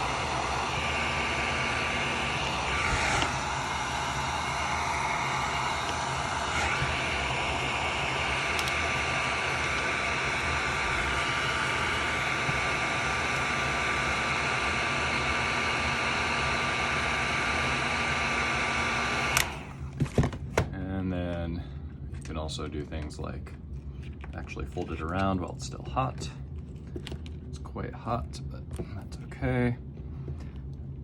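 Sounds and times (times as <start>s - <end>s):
heat gun blowing: 0.0s - 19.9s
heat gun switch click: 8.5s - 8.8s, 19.3s - 19.6s.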